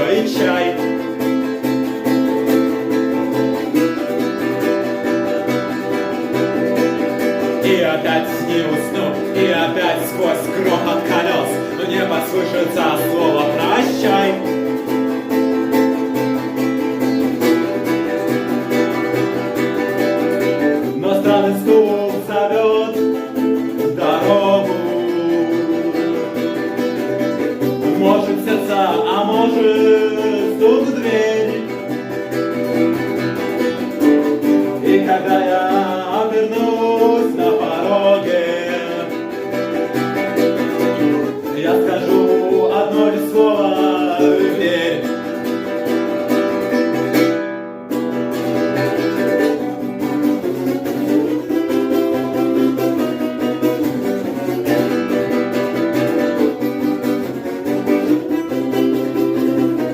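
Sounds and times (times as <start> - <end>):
person singing: 0.0 - 2.0, 5.3 - 15.1, 19.8 - 46.6, 50.9 - 56.5
acoustic guitar strumming: 0.0 - 59.9.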